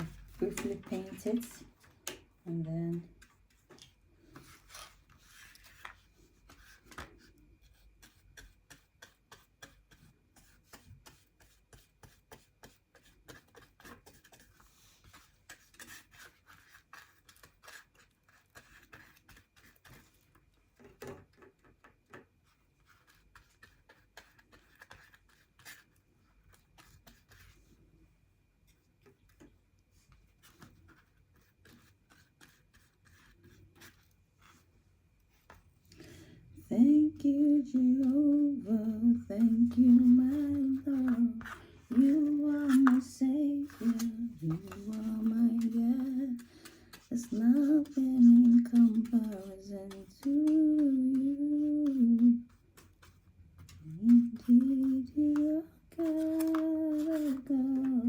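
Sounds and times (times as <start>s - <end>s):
paintbrush rubbing on cardboard: 37.6s - 55.4s
scrape or tap: 39.4s - 58.0s.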